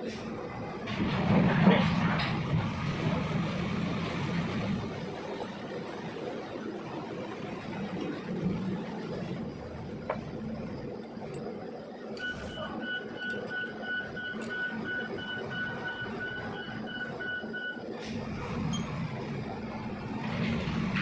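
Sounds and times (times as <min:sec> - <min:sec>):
steady background noise: 0:00.0 - 0:21.0
rapid electronic beeping: 0:12.2 - 0:17.9.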